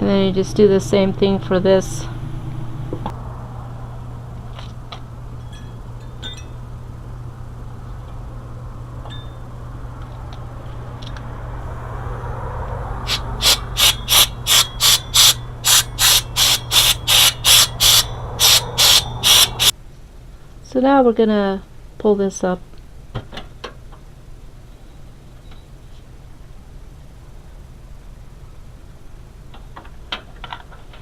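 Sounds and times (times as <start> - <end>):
steady low hum: 0.0 - 20.6.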